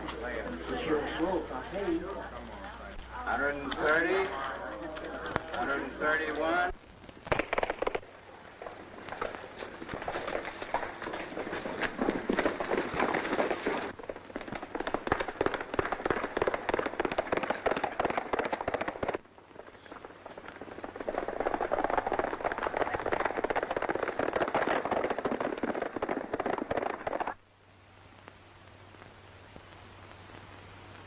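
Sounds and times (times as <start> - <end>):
galloping hooves: 3.0 - 27.4.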